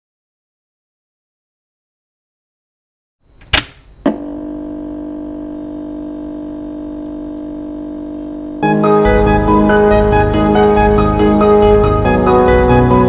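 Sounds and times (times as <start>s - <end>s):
hum of held tones: 3.3s - 10.1s
sharp clicks: 3.4s - 4.1s.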